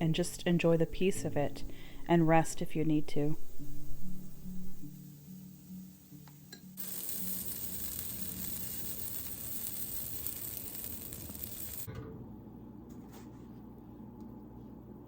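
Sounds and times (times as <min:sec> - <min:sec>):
batter sizzling in a hot pan: 0:04.8 - 0:11.9.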